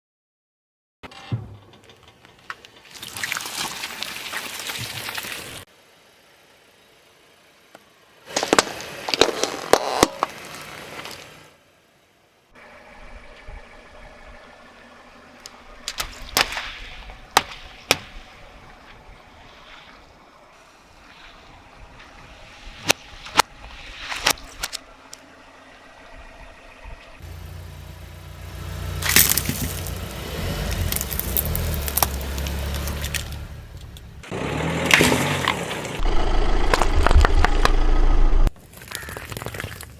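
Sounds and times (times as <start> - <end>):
car tyre crushing objects: 8.2 - 11.5, 14.6 - 20.4, 27.2 - 36.0, 36.6 - 39.9
sharp cracks and snaps: 29.0 - 34.1.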